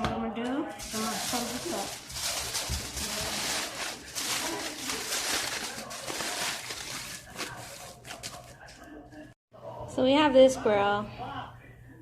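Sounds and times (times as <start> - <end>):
foil crinkling: 0.8 - 8.7
food tossed in foil rustling: 0.8 - 8.7.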